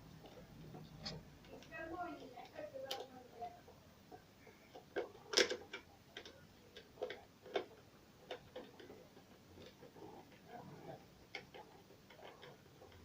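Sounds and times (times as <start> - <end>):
small parts clicking and tapping: 0.1 - 13.0.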